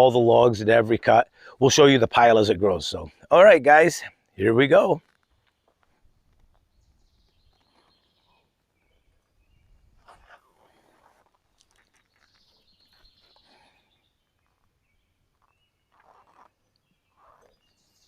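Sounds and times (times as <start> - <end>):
faint bird calls: 6.5 - 18.0.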